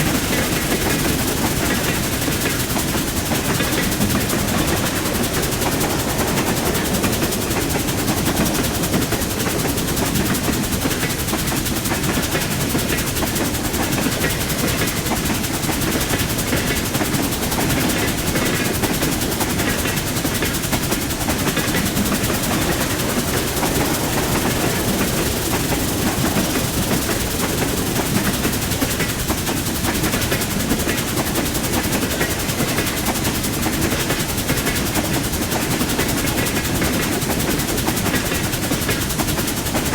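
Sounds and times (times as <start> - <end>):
train wheels rattling on track: 0.0 - 39.9.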